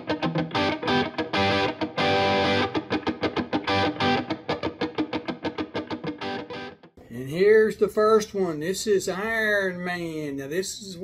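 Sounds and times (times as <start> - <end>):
distorted electric guitar: 0.0 - 6.9.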